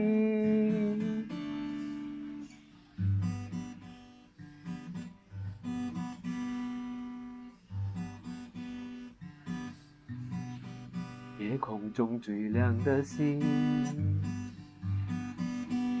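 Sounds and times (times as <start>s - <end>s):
acoustic guitar chords: 0.0s - 16.0s.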